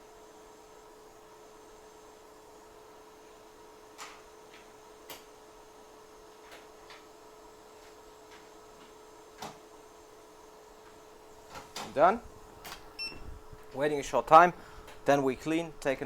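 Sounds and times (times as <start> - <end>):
hot-air rework station blowing: 7.2 - 16.0.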